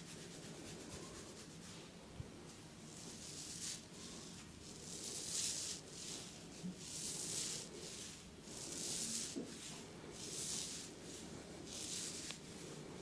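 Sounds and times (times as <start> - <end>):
hands rubbing in massage: 2.9 - 13.0.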